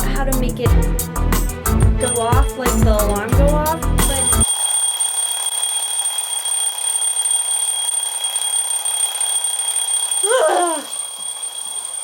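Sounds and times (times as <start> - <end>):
alarm clock tone: 2.0 - 12.0
brief cry: 10.2 - 11.0.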